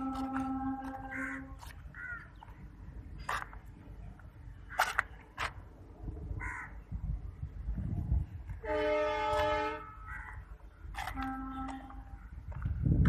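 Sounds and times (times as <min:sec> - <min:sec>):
horn long blast: 0:00.0 - 0:01.7, 0:08.6 - 0:10.1, 0:11.0 - 0:12.2
crows cawing: 0:01.1 - 0:02.4, 0:06.4 - 0:06.8, 0:10.1 - 0:10.4.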